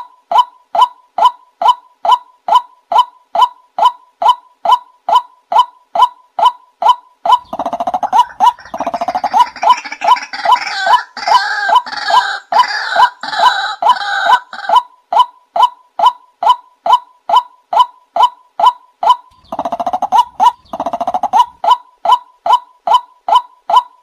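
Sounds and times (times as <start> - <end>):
waterhen calling: 7.3 - 14.8, 19.3 - 22.2
rattling and harsh croaks: 7.4 - 10.6, 19.3 - 21.6.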